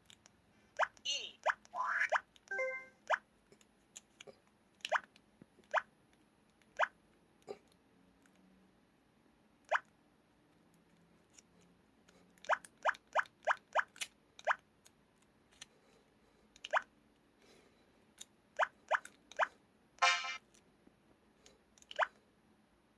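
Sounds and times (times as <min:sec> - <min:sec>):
buzzy phone tone: 0:02.5 - 0:03.0.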